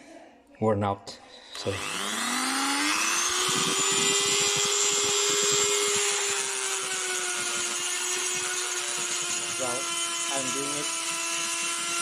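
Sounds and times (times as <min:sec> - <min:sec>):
rotary tool grinding: 0:01.6 - 0:12.0.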